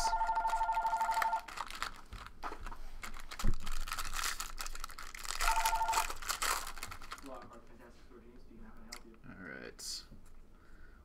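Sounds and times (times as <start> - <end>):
telephone ringing: 0.0 - 1.5, 5.4 - 6.2
card packaging tearing and crinkling: 1.4 - 7.4.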